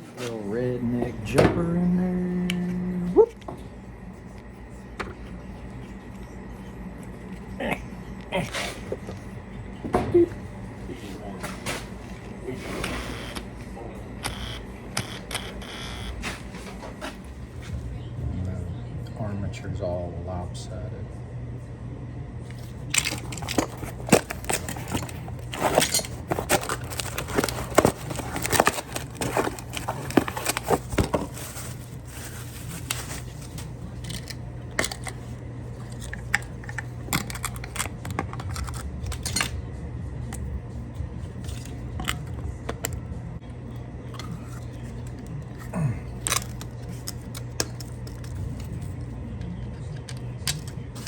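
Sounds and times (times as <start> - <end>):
steady low hum: 0.0 - 51.0.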